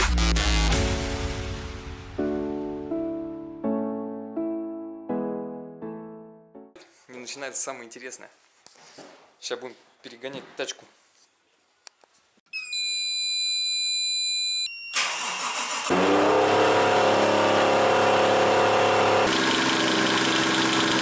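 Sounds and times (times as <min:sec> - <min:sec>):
engine running fast: 0:15.9 - 0:21.0.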